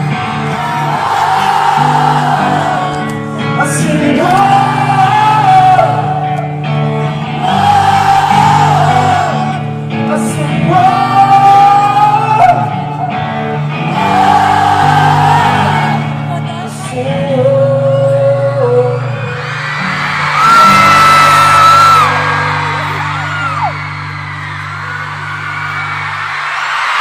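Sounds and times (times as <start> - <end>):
person singing: 0.0 - 19.6
live band with guitar: 0.0 - 27.0.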